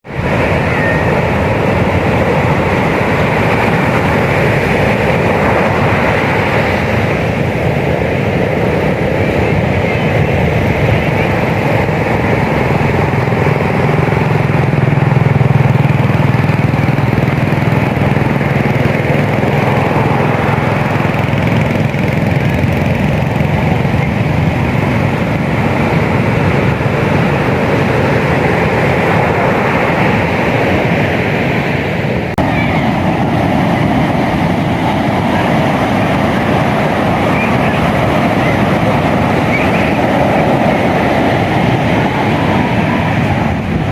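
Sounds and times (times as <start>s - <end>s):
ocean surf breaking on beach: 0.0s - 43.9s.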